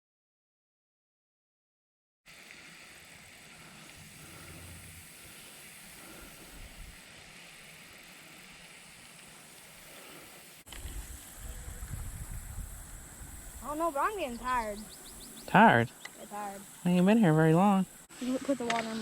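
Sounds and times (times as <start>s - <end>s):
faint outdoor hiss: 2.3s - 19.0s
wind on microphone: 10.7s - 15.4s
gusty low wind rumble: 10.8s - 15.5s.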